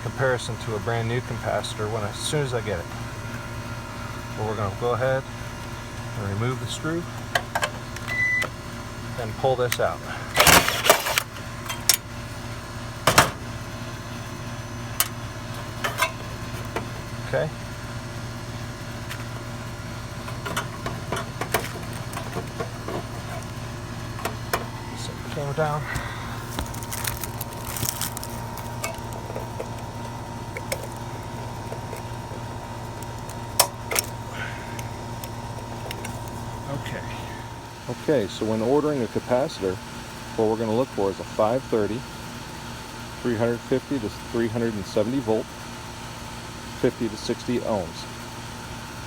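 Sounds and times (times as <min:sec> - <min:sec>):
air conditioner unit humming: 0:00.0 - 0:49.0
sharp clicks and metal knocks: 0:07.2 - 0:08.5, 0:15.0 - 0:16.9, 0:20.2 - 0:23.6, 0:28.7 - 0:34.2.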